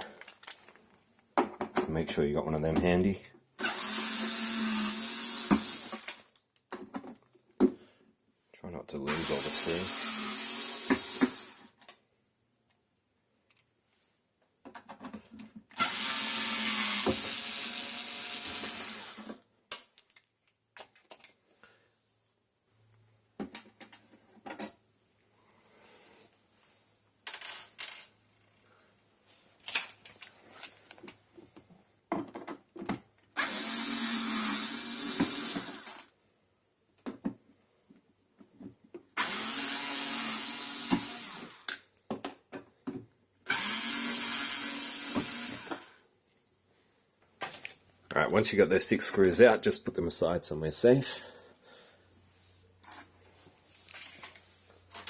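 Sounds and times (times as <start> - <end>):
small clicks and handling noises: 0.0 - 1.8, 13.4 - 13.7, 19.7 - 21.4, 29.6 - 33.3
cordless power drill running: 3.6 - 6.2, 9.1 - 11.7, 15.8 - 19.4, 33.4 - 36.1, 39.2 - 41.8, 43.4 - 46.0.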